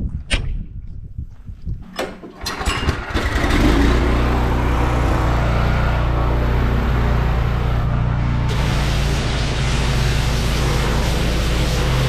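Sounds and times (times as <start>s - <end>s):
pressure washer engine running: 2.9s - 12.0s
hiss of water spray: 8.5s - 12.0s.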